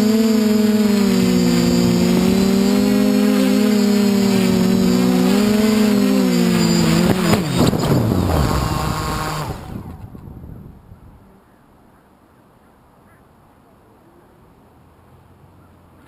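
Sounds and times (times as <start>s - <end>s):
drone motors whining: 0.0s - 10.2s.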